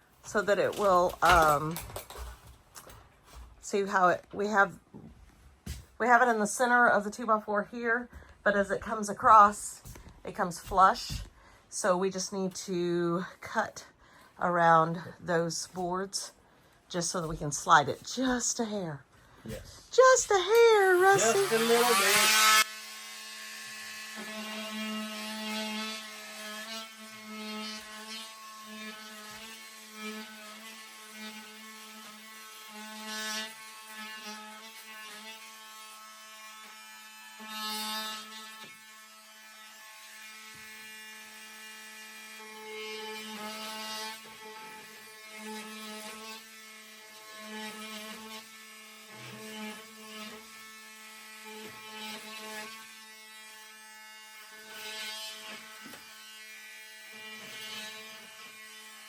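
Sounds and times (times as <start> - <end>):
power tool buzzing: 0.2 - 4.1, 17.0 - 59.0.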